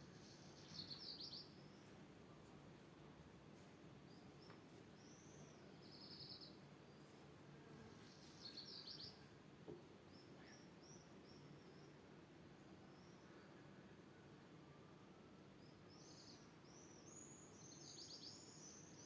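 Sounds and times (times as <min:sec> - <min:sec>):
low background hiss: 0:00.0 - 0:19.0
birdsong chirps and trills: 0:00.2 - 0:02.0, 0:04.1 - 0:07.1, 0:10.0 - 0:13.6, 0:15.6 - 0:19.0.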